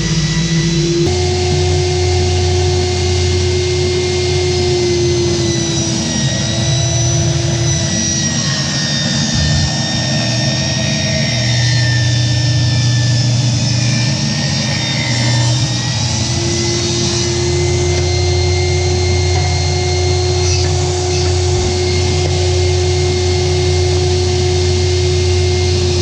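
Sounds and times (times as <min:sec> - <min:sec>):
table saw motor whine: 0:00.0 - 0:26.0.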